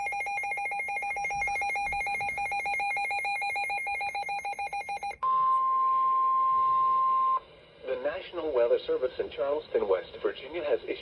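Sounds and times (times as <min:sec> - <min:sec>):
steady high alarm tone: 0:00.0 - 0:07.4.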